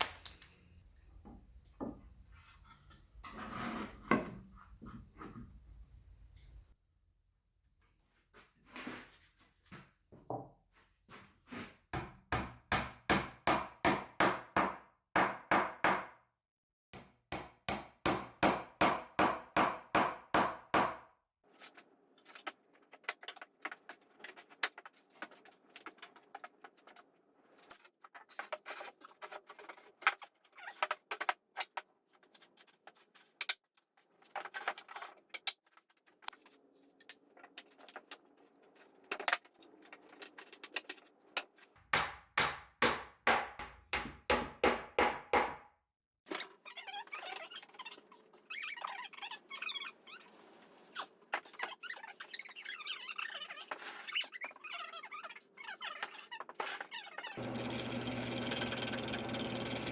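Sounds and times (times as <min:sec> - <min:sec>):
hand tool strokes on wood: 0:57.4 - 0:59.9.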